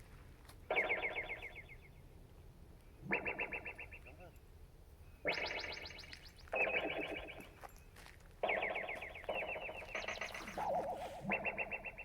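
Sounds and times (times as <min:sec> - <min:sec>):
electronic ufo warbling pulse: 0:00.7 - 0:01.6, 0:03.0 - 0:04.0, 0:05.2 - 0:07.5, 0:08.4 - 0:12.0.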